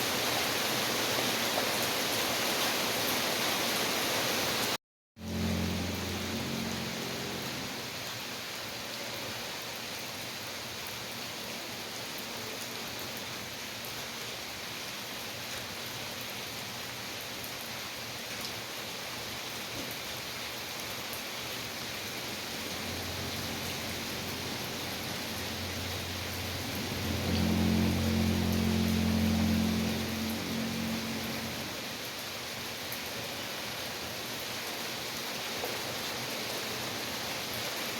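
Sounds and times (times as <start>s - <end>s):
rain falling: 0.0s - 37.9s
low steady hum: 22.5s - 31.7s.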